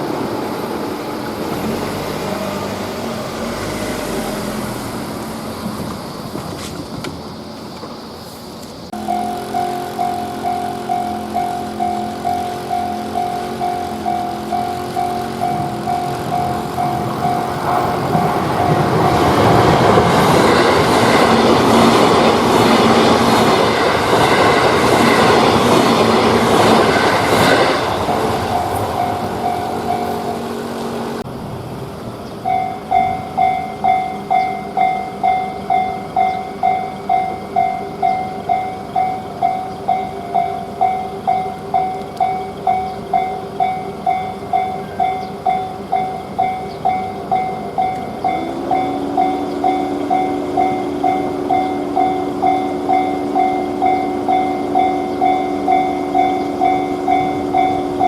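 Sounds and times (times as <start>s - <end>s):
train wheels clattering: 5.0s - 31.0s
railroad crossing bell ringing: 8.9s - 31.2s, 32.3s - 58.0s.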